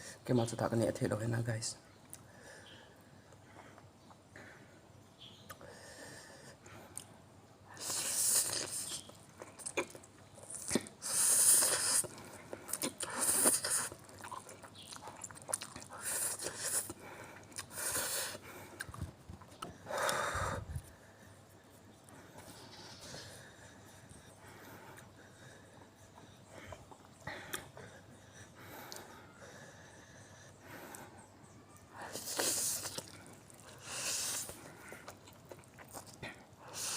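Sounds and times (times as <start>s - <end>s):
person slurping and chewing noodles: 7.8s - 20.8s, 32.0s - 36.9s.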